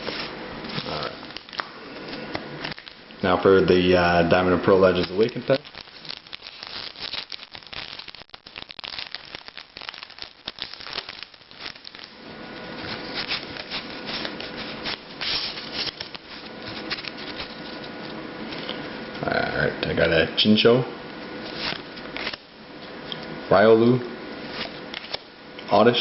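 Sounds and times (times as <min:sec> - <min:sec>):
foil wrapper crinkling and tearing: 0:02.7 - 0:03.0, 0:03.8 - 0:18.0.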